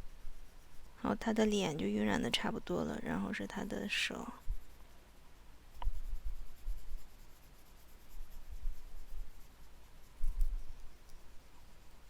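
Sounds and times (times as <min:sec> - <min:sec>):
pencil rubbing on paper: 0:00.1 - 0:12.0
low bumps on drawing surface: 0:05.8 - 0:11.0.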